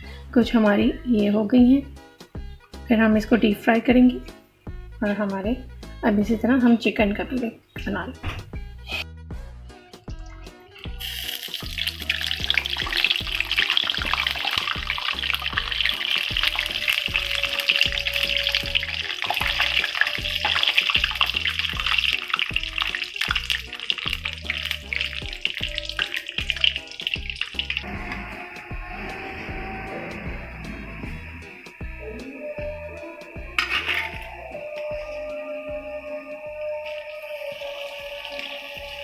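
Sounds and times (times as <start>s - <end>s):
background music with beat: 0.0s - 39.0s
food sizzling in hot oil: 10.1s - 35.2s, 36.3s - 39.0s.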